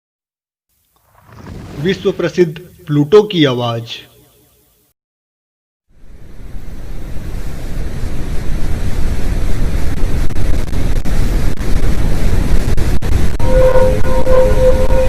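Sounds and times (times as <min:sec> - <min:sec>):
deep rushing noise: 0:01.0 - 0:03.2
steady droning tone: 0:13.3 - 0:15.0.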